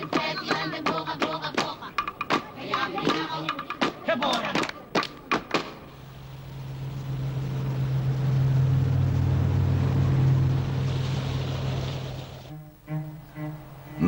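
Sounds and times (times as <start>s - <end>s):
boat engine drone: 5.9s - 14.0s.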